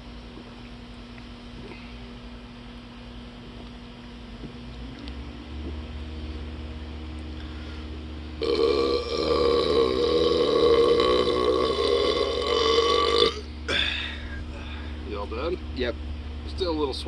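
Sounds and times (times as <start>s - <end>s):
faint low hum: 0.0s - 17.0s
loud deep burp: 8.4s - 14.2s.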